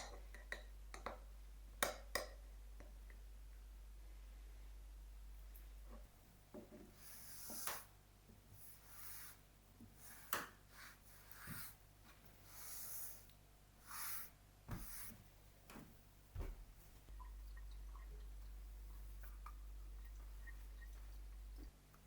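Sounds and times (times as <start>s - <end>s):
rubbing or scraping strokes: 8.5s - 15.3s.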